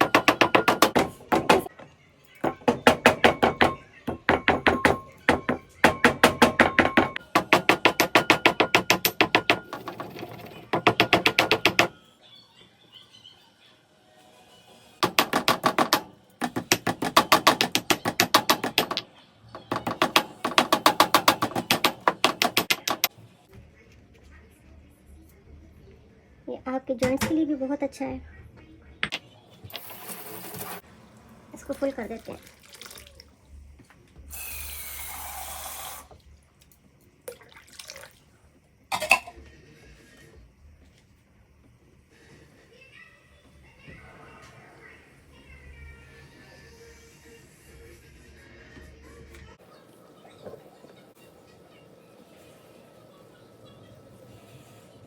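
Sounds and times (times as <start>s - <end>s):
pestle pounding in mortar: 0.0s - 1.7s, 2.5s - 9.8s, 10.8s - 11.9s, 15.0s - 19.0s, 19.7s - 23.1s
tap water filling a pot: 32.0s - 33.4s.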